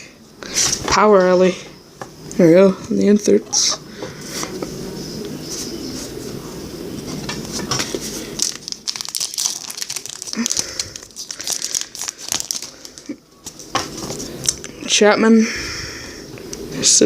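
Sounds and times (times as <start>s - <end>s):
cards rustling: 7.5s - 14.3s
foil wrapper crinkling and tearing: 7.9s - 14.3s.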